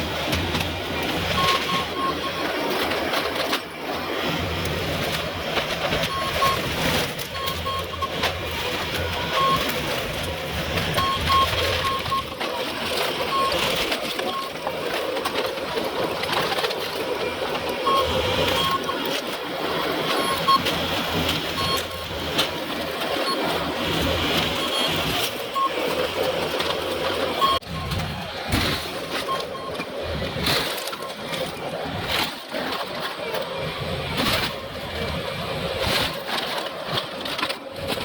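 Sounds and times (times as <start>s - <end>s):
heavy machinery engine running: 0.0s - 38.0s
short high beeps: 1.3s - 2.6s, 6.0s - 8.2s, 9.2s - 9.7s, 11.0s - 12.3s, 17.8s - 19.1s, 19.8s - 20.6s, 21.5s - 22.1s, 27.3s - 28.0s.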